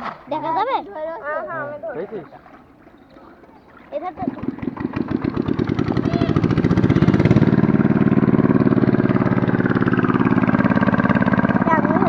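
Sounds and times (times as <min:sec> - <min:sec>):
small engine running: 0:04.2 - 0:12.0.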